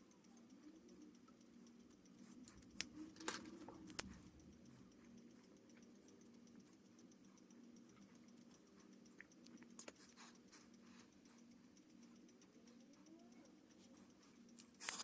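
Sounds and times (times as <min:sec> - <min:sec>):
low steady hum: 0:00.0 - 0:15.0
drawing tool clicks: 0:14.6 - 0:15.0.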